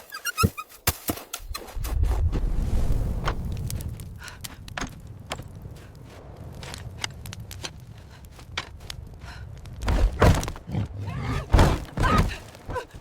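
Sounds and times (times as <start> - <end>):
low rumble: 1.5 - 11.5.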